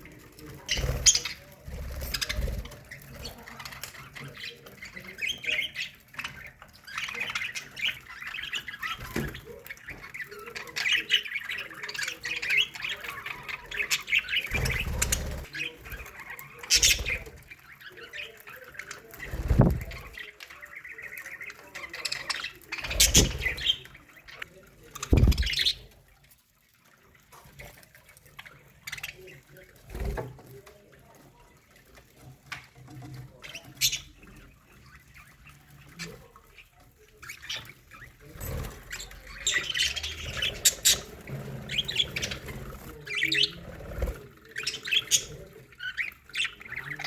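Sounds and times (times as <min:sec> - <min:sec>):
budgerigars chattering and warbling: 0:00.0 - 0:26.3, 0:26.9 - 0:47.0.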